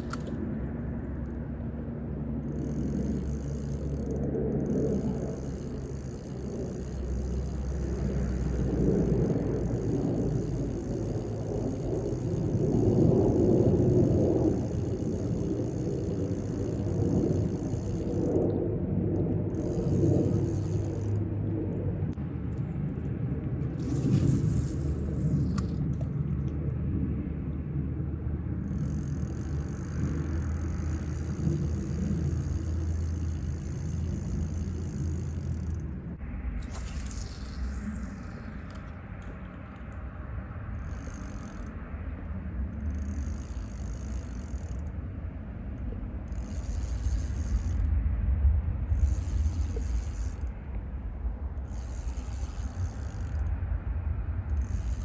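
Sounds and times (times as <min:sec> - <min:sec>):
vehicle rumble: 0:00.0 - 0:55.0
rattling and scraping: 0:23.7 - 0:26.1.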